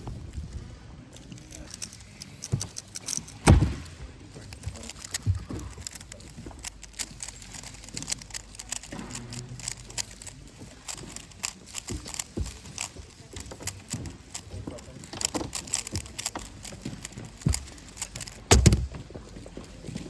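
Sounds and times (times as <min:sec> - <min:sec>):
puzzle cube clicking: 0:01.2 - 0:19.0
sharp thump: 0:03.4 - 0:04.0.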